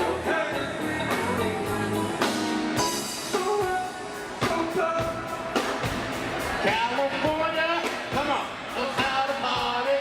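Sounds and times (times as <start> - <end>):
person singing: 0.0 - 5.7
music with drum beat: 0.0 - 10.0.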